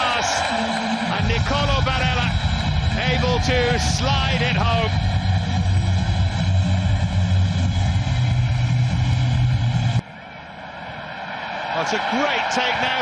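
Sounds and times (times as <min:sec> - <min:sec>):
stadium crowd cheering: 0:00.0 - 0:13.0.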